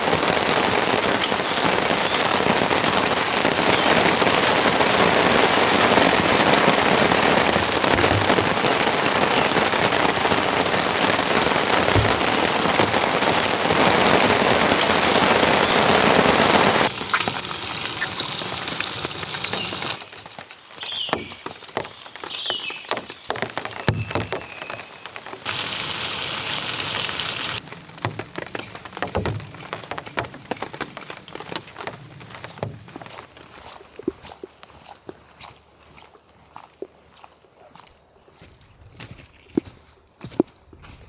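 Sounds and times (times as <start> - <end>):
heavy rain falling: 0.0 - 33.0
scattered drips: 16.8 - 31.6.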